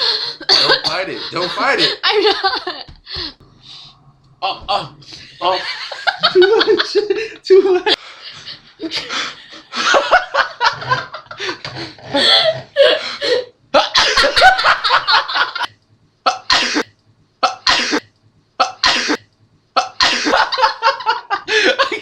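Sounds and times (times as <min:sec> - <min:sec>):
person laughing: 0:05.4 - 0:08.0
person coughing hard: 0:16.3 - 0:19.2, 0:19.8 - 0:20.4.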